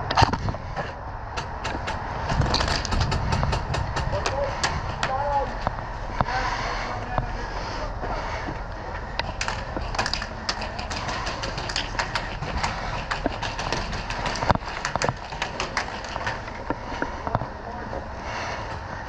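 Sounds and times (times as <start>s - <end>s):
steady noisy background: 0.0s - 19.0s
airsoft guns firing: 9.4s - 16.4s.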